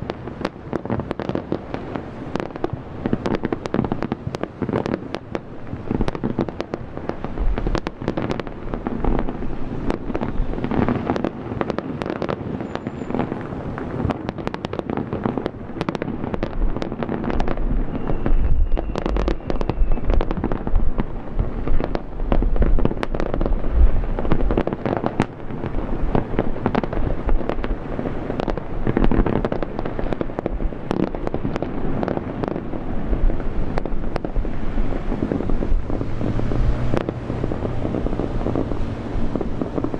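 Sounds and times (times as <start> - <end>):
fireworks bangs and crackles: 0.0 - 39.9
low rumble: 32.9 - 39.9.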